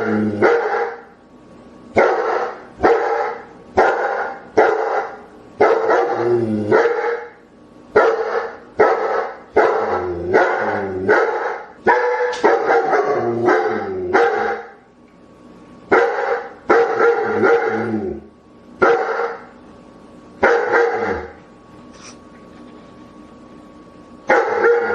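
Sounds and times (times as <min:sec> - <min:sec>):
dogs barking: 0:00.0 - 0:01.1, 0:02.0 - 0:07.4, 0:08.0 - 0:14.8, 0:15.9 - 0:17.9, 0:18.8 - 0:19.5, 0:20.4 - 0:21.4, 0:24.3 - 0:24.9.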